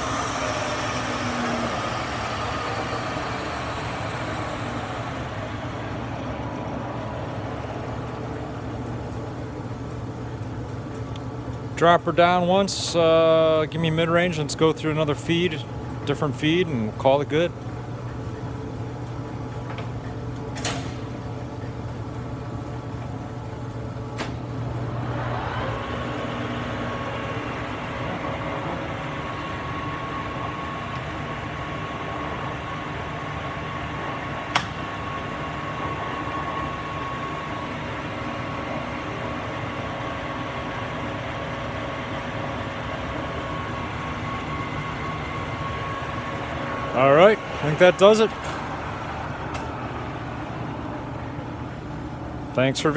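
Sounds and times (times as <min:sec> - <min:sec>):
high whine: 0:00.0 - 0:09.4
lathe humming: 0:00.0 - 0:52.7.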